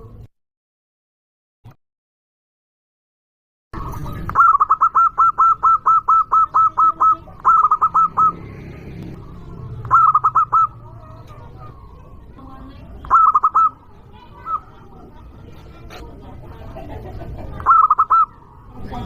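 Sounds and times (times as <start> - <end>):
dove cooing: 4.3 - 19.0.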